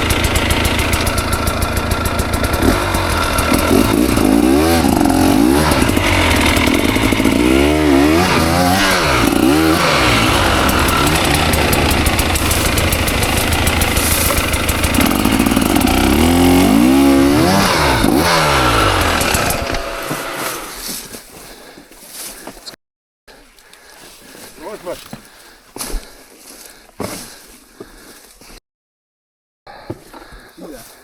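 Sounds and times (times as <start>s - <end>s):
dirt bike engine revving: 0.0s - 20.9s.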